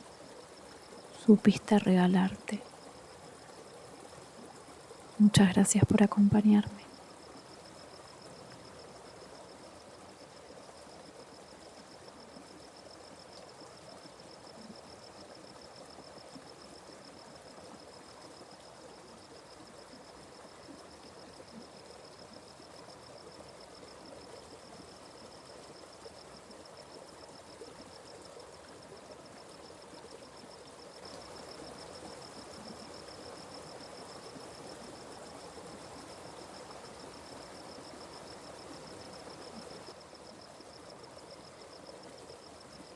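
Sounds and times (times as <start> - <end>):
stream flowing: 0.0 - 11.9.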